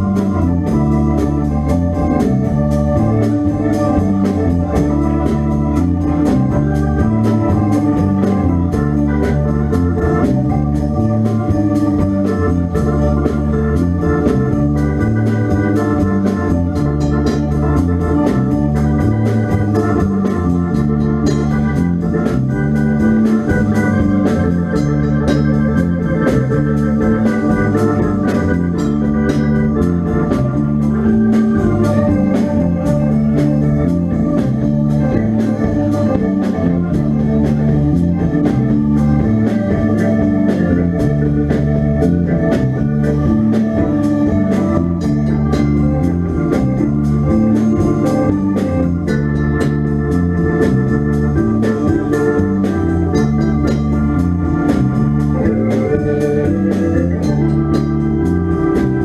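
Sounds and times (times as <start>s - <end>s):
bass and drums beat: 0.0s - 59.0s
electric organ riff: 0.0s - 59.0s.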